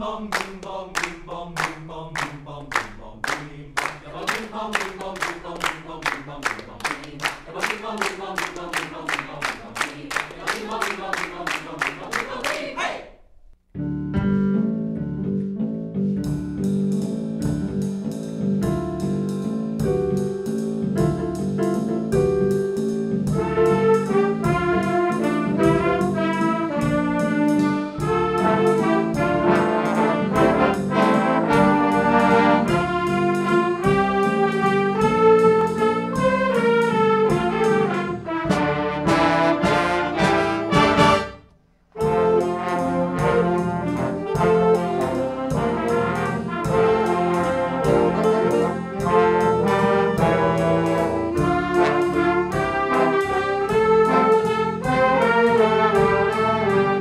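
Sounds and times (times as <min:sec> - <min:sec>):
brass ensemble playing: 0:23.3 - 0:57.0.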